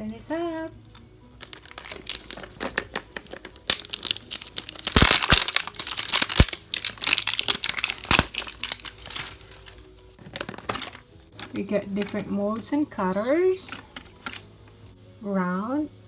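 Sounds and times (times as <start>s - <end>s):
packaging crinkling and tearing: 1.4s - 12.2s, 13.8s - 14.5s.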